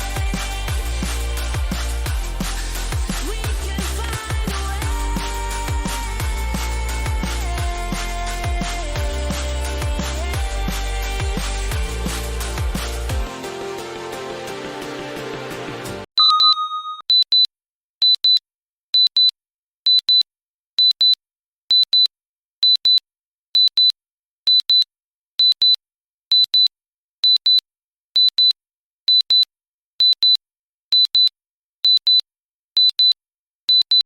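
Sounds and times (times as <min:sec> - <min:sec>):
timer alarm double beeps: 0:16.2 - 0:18.4, 0:19.0 - 0:23.0, 0:23.6 - 0:27.6, 0:31.9 - 0:32.2, 0:32.8 - 0:34.0.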